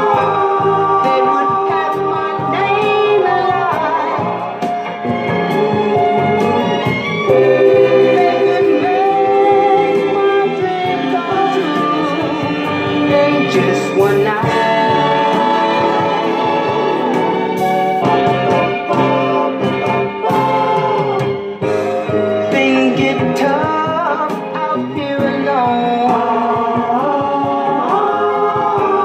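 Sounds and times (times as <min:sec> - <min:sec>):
backing band: 0:00.0 - 0:29.0
wordless layered singing: 0:07.3 - 0:17.6, 0:25.4 - 0:29.0.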